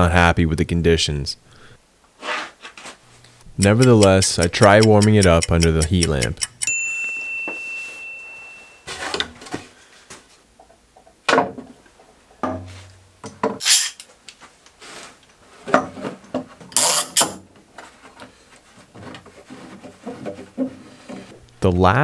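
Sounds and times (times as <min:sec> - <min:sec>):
wood rubbing: 0:03.5 - 0:06.6.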